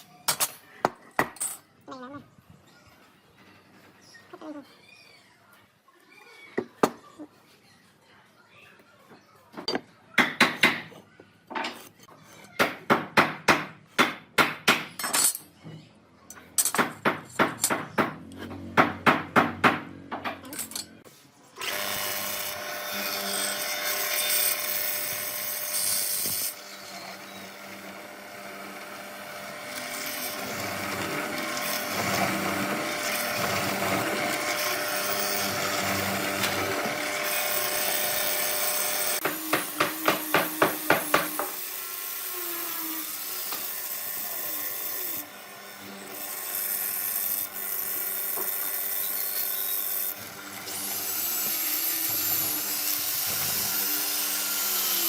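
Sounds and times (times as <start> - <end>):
power tool humming: 21.6 - 55.0
sharp strokes on wood: 29.6 - 41.7.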